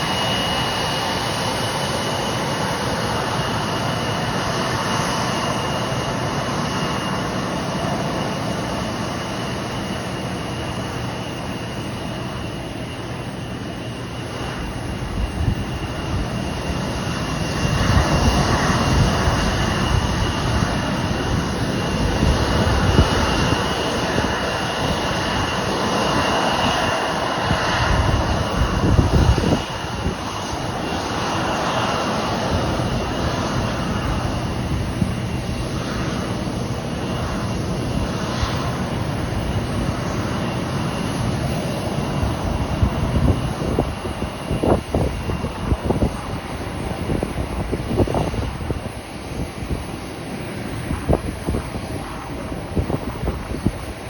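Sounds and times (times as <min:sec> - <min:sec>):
jet engines roaring and whining: 0:00.0 - 0:54.0.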